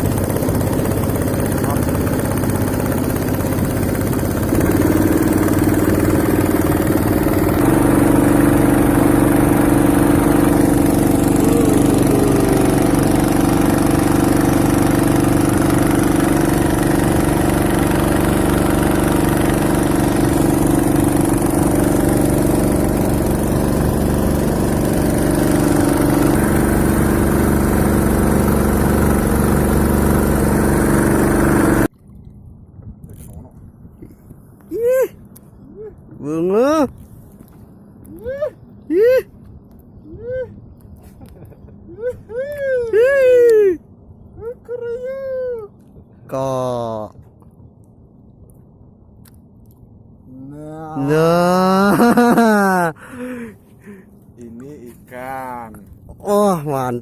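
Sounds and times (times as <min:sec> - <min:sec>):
boat engine running: 0:00.0 - 0:34.6.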